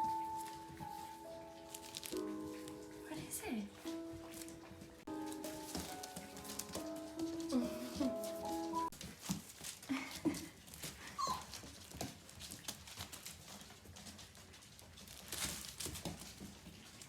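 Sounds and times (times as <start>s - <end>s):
puppies squeaking: 0.0s - 8.9s, 11.1s - 11.6s
light clicks and scratches: 0.0s - 17.0s
puppies whimpering: 11.1s - 11.6s.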